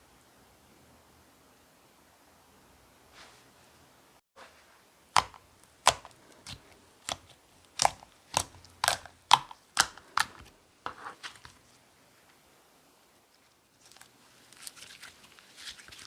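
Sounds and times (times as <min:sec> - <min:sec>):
slime popping and clicking: 0:05.2 - 0:10.5.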